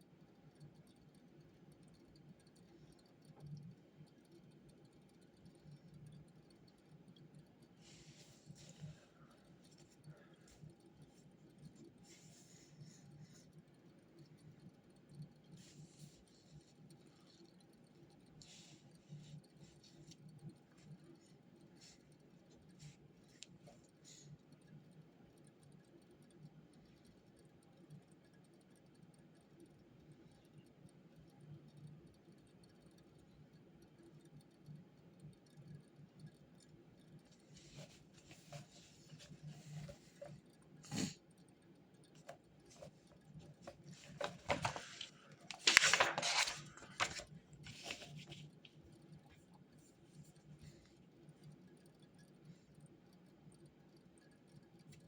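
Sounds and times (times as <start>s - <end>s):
faint scratches and clicks: 0.0s - 55.0s
low steady hum: 0.0s - 55.0s
paper rustling: 43.6s - 48.4s.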